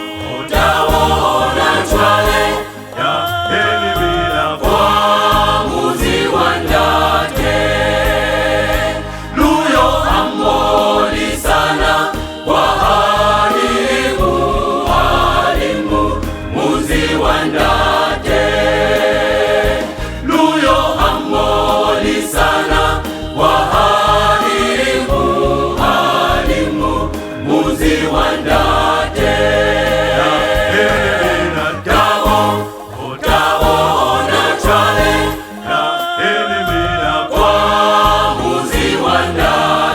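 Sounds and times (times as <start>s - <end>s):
choir singing gospel: 0.0s - 39.9s
sustained low bass line: 4.0s - 27.2s.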